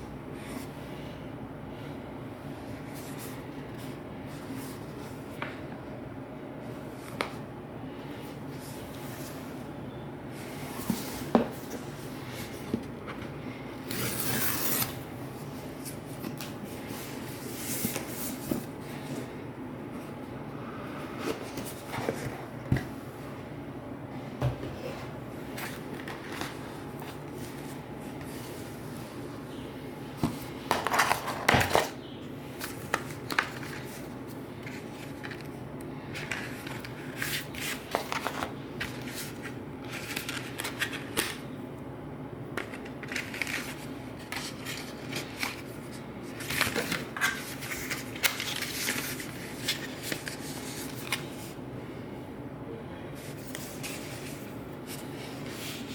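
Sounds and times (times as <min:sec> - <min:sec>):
cardboard and paper rustling: 0:25.5 - 0:28.8, 0:30.2 - 0:32.0, 0:32.6 - 0:35.5, 0:36.1 - 0:41.4, 0:42.6 - 0:51.6.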